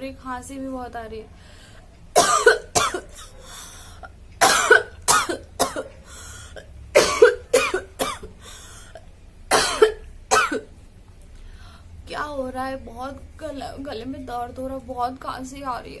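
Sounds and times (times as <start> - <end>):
woman coughing: 2.2 - 3.4, 4.4 - 6.0, 6.6 - 8.3, 9.5 - 10.7.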